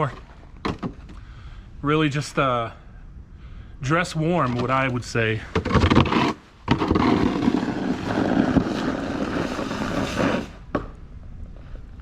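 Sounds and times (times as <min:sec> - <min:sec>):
snow shovel scraping pavement: 0:05.6 - 0:10.7.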